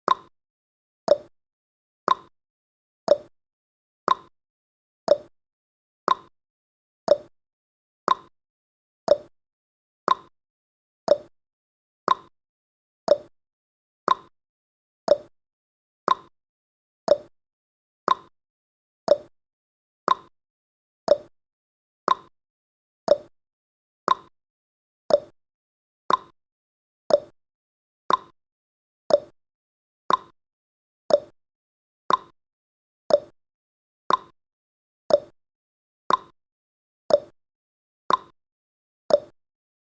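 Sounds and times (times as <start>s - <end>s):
clock ticking: 11.1s - 11.3s, 13.1s - 13.3s, 19.1s - 19.3s, 21.1s - 21.3s, 23.1s - 23.3s, 35.1s - 35.3s.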